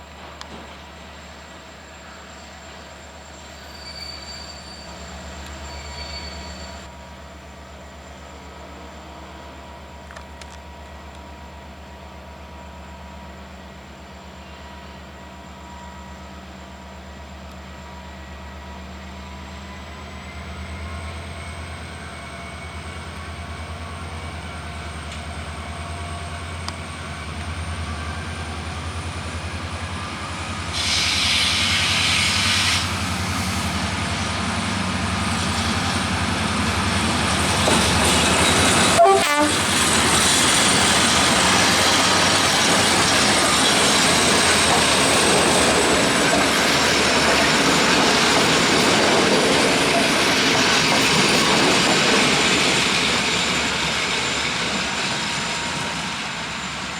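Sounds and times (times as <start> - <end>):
train wheels rolling on rails: 0.0 - 56.9
locomotive engine hum: 15.6 - 56.9.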